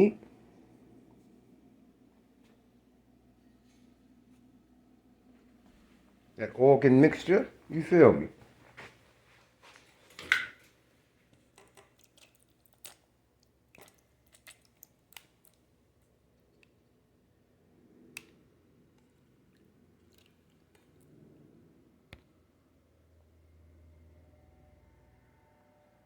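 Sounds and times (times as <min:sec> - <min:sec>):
meat dropping into bowls: 0:10.1 - 0:10.7
wet squishes of raw meat: 0:11.7 - 0:16.6, 0:18.9 - 0:21.2.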